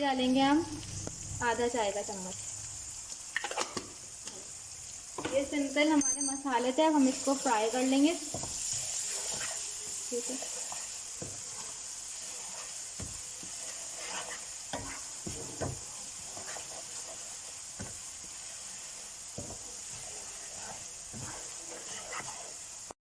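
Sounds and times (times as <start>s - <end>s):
food sizzling in hot oil: 0.0s - 23.0s
utensil scraping and knocking pan: 8.3s - 22.8s.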